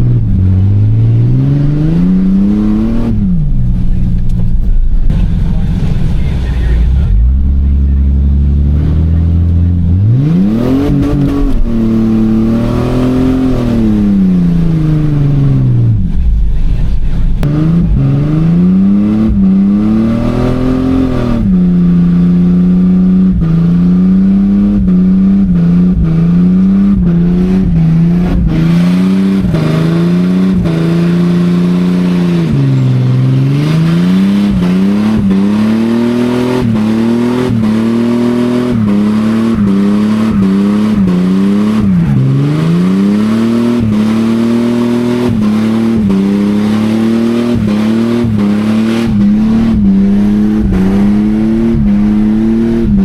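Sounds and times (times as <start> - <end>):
car engine revving: 0.0 - 53.0.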